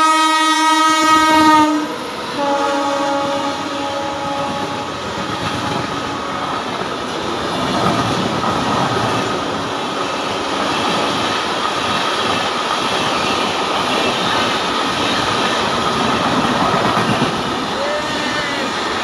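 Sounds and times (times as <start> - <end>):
two-tone train horn: 0.0 - 6.6
train rumbling and rattling: 0.0 - 19.0.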